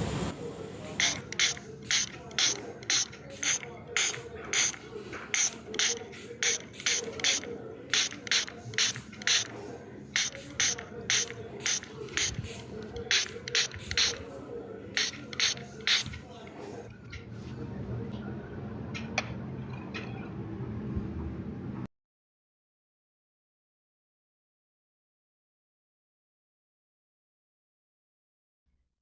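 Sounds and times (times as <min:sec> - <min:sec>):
low background noise: 0:00.0 - 0:21.9.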